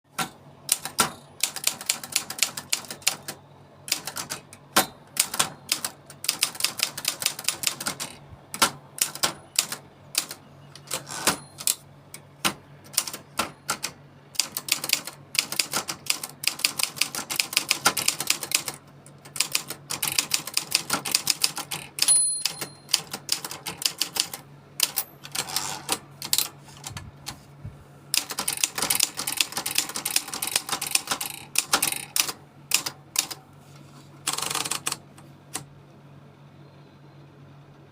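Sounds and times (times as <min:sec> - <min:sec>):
typewriter key clacks: 0:00.2 - 0:03.2, 0:03.9 - 0:11.8, 0:12.4 - 0:26.5
typewriter margin bell: 0:09.1 - 0:11.8, 0:19.4 - 0:26.5.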